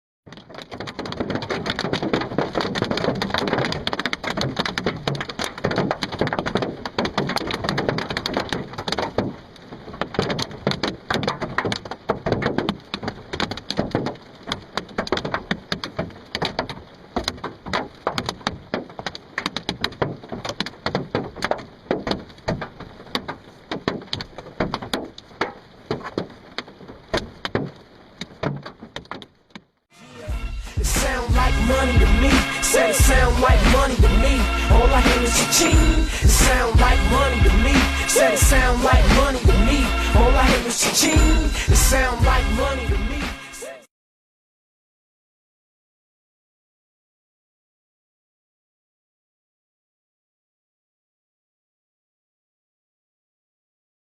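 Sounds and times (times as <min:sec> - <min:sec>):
hail clattering on truck body: 0:00.3 - 0:29.7, 0:31.0 - 0:43.2.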